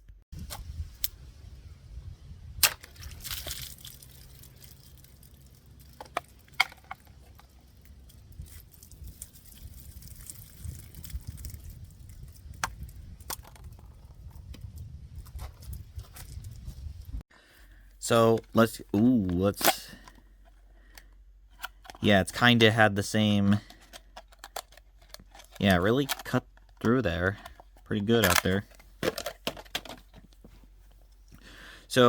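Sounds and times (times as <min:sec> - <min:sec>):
sharp cracks and snaps: 0:02.6 - 0:13.9.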